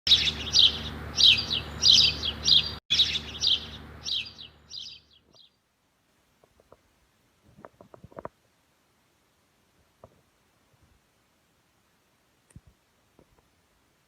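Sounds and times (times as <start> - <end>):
bird chirping: 0.1 - 5.6.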